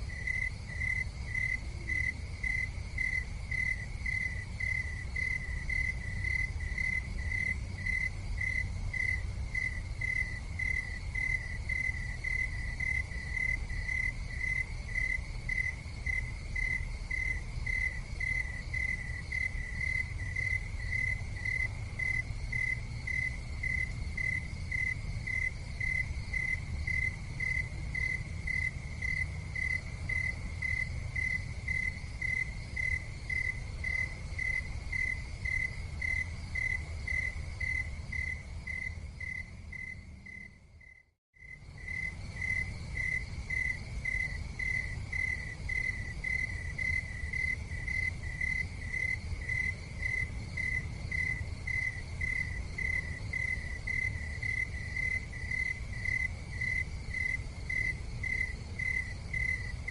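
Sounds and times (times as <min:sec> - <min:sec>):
cricket chirping: 0:00.0 - 0:59.9.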